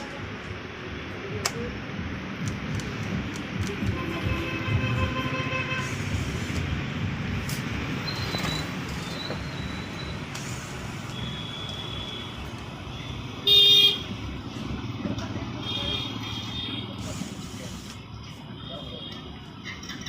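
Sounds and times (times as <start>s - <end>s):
street traffic rumbling: 0.0s - 20.0s
vehicle horns: 3.8s - 6.3s, 13.4s - 14.2s.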